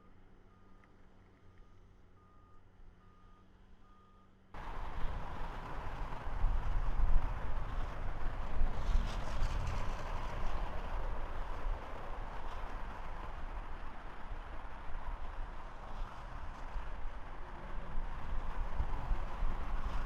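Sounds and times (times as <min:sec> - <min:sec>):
train passing with rumble: 0:04.6 - 0:14.1.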